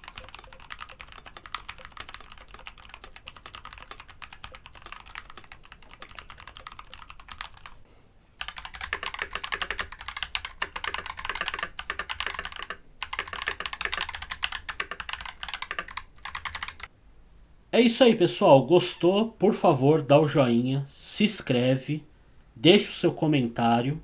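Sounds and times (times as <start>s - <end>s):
mechanical keyboard typing: 0.0s - 7.8s, 8.4s - 16.9s.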